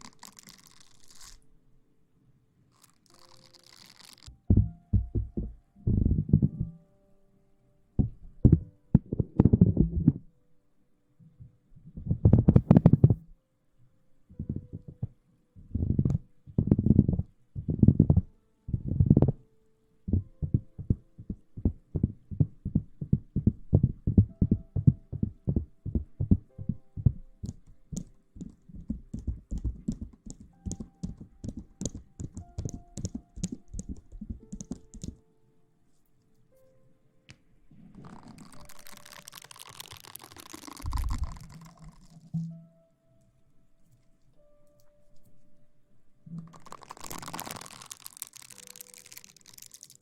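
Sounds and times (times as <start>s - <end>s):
faint crackling: 2.7s - 6.8s, 36.2s - 45.5s, 46.3s - 50.0s
rustling against microphone: 20.1s - 35.2s, 37.6s - 42.6s
soft taps: 20.2s - 35.2s.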